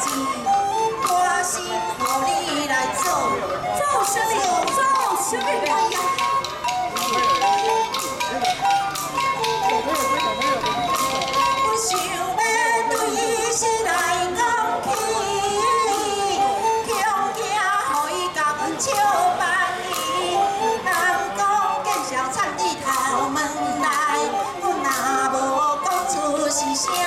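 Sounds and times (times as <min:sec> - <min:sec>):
woman singing ornamented melody: 0:00.0 - 0:07.2, 0:11.1 - 0:27.0
traditional instrumental accompaniment: 0:00.0 - 0:27.0
sharp percussion strikes: 0:02.9 - 0:19.2.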